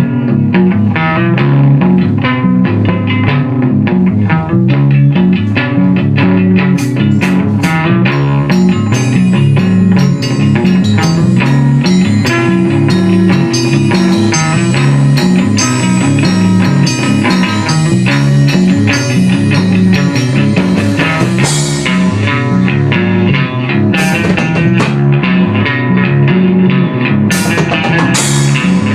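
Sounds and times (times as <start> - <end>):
bass guitar: 0.0 - 28.9
electric guitar: 0.0 - 28.9
drum kit hits: 6.7 - 25.4, 27.3 - 28.9.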